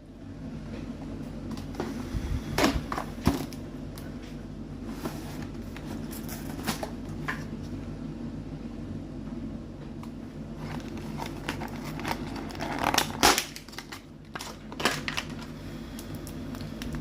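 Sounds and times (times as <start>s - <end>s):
steady low hum: 0.0s - 17.0s
packaging clicks and crinkling: 10.6s - 17.0s.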